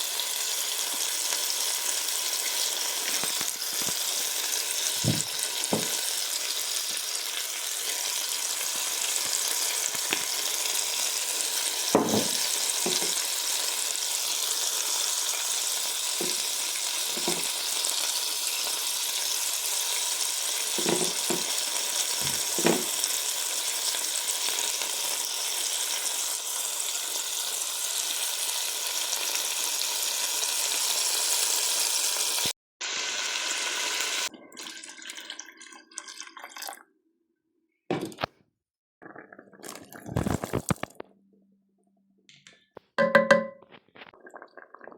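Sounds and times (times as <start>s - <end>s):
food sizzling in hot oil: 0.0s - 34.3s
utensil knocking in pot: 12.0s - 13.2s, 17.2s - 17.5s, 43.0s - 43.7s.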